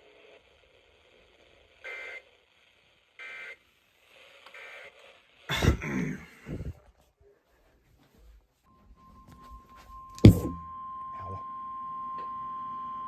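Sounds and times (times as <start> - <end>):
loud vocal outburst: 5.5 - 6.8.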